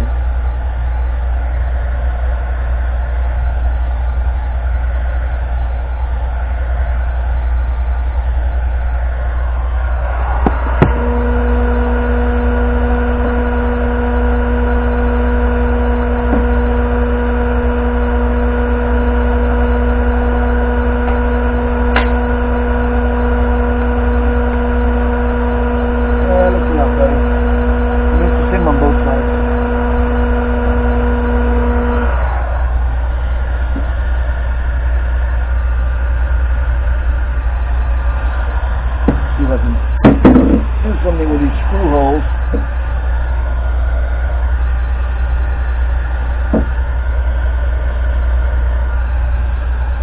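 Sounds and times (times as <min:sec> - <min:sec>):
heat gun fan blowing: 0:00.0 - 0:50.0
steady pitched hum: 0:00.0 - 0:50.0
click: 0:21.0 - 0:21.3, 0:21.9 - 0:22.4.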